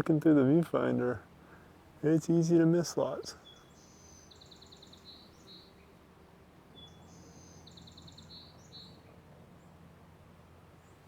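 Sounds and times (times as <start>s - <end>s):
sparrow singing: 2.0s - 6.0s, 6.7s - 9.8s.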